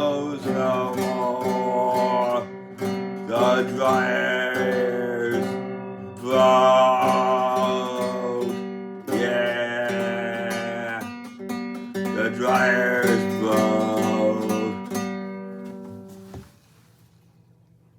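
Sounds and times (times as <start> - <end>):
acoustic guitar strumming: 0.0 - 16.6.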